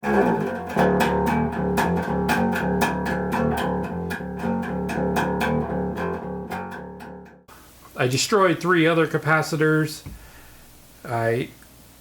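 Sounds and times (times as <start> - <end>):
guitar and bass music: 0.0 - 7.5.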